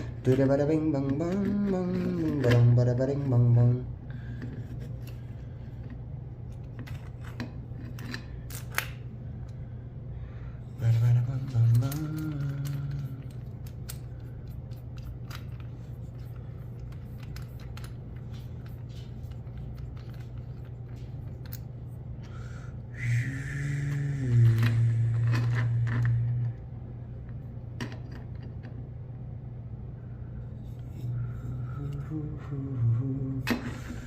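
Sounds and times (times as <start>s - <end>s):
plastic parts clicking and scraping: 0.0s - 3.4s, 4.4s - 9.0s, 11.3s - 21.7s, 24.4s - 26.5s
steady low hum: 0.0s - 34.0s
person humming a tune: 22.9s - 26.6s, 31.4s - 34.0s.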